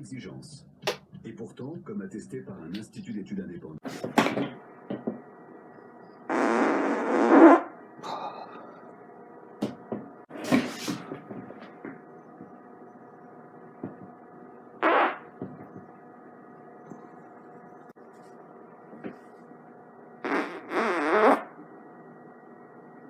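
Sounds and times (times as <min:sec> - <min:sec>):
man farting: 0:06.3 - 0:07.7, 0:14.8 - 0:15.4, 0:20.2 - 0:21.6
faint knocks and rustles: 0:09.6 - 0:12.6, 0:13.8 - 0:14.2, 0:15.4 - 0:16.0.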